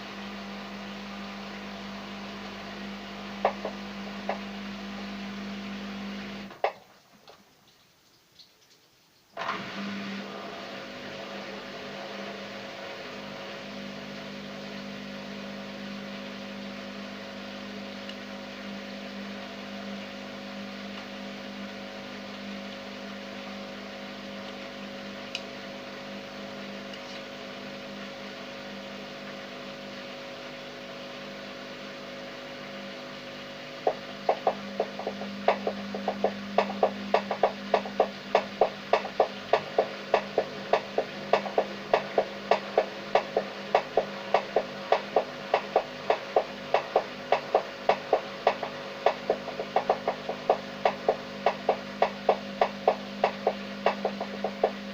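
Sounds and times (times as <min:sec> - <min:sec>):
washing machine motor hum: 0:00.0 - 0:07.0, 0:09.4 - 0:54.9
loud regular cracking knocks: 0:33.8 - 0:54.8.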